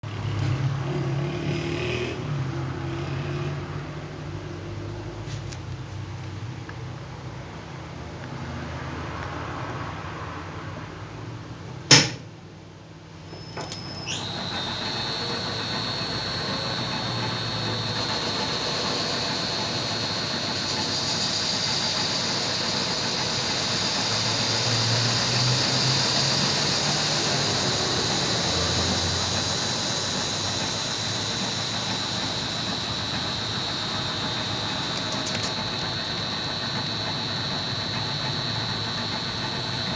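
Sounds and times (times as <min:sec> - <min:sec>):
machine switch click: 0:11.9 - 0:12.2
machine high-pitched whine: 0:13.3 - 0:39.9.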